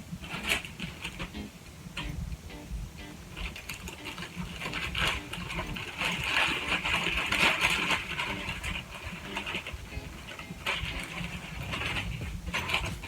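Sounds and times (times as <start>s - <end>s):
small clicks and knocks: 0.2s - 2.4s, 3.3s - 13.0s
nylon bag rustling: 3.3s - 13.0s.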